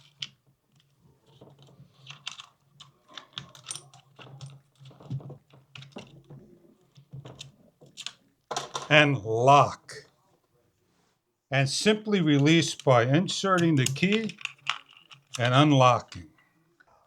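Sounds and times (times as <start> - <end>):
cable lock clicking and rattling: 13.6 - 16.2.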